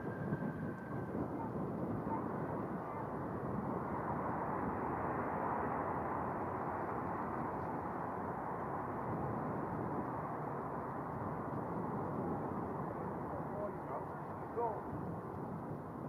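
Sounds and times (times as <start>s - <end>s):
jet engines landing aircraft: 0.0s - 16.0s.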